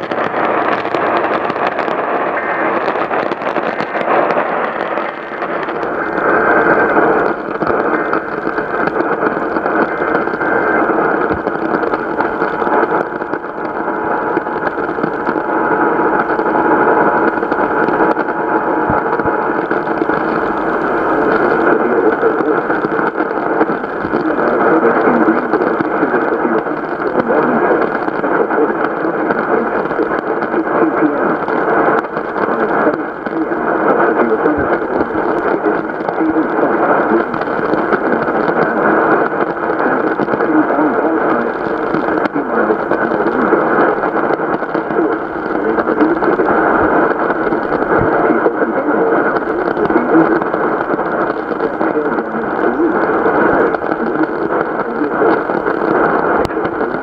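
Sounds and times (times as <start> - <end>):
radio static and hiss: 0.0 - 57.0
radio voice: 0.0 - 57.0.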